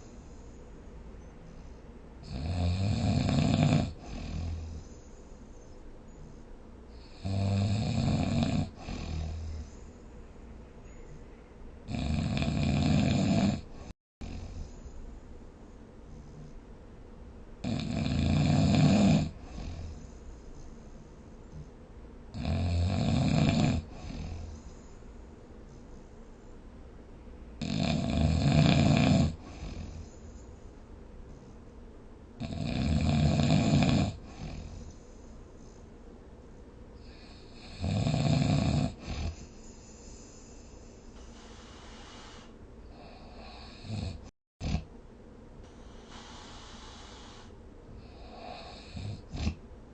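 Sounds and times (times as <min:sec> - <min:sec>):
quiet breath: 0:00.0 - 0:02.3, 0:03.9 - 0:07.3, 0:08.8 - 0:11.7, 0:13.8 - 0:16.9, 0:19.3 - 0:22.1, 0:23.9 - 0:26.8, 0:29.3 - 0:31.9, 0:34.2 - 0:37.8, 0:38.9 - 0:44.3, 0:45.6 - 0:49.6
person snoring: 0:02.2 - 0:04.8, 0:07.0 - 0:09.7, 0:11.9 - 0:14.6, 0:17.6 - 0:20.0, 0:22.3 - 0:24.6, 0:27.6 - 0:30.0, 0:32.4 - 0:34.8, 0:37.0 - 0:39.5, 0:45.8 - 0:49.6.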